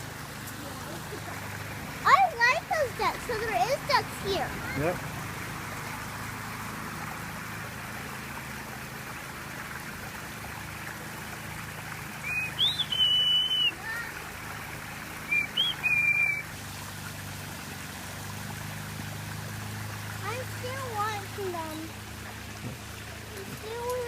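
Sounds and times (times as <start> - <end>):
running water: 0.0 - 24.0
bird singing: 12.2 - 13.8, 15.2 - 16.5.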